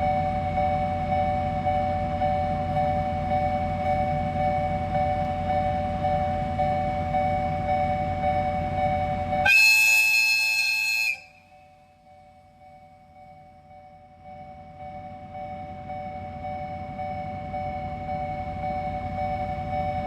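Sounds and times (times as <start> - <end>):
train horn: 9.4 - 11.6.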